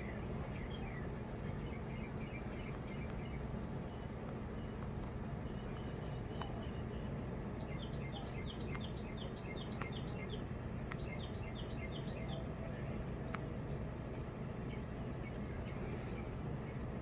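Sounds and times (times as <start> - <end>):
bird chirping: 5.4 - 12.5.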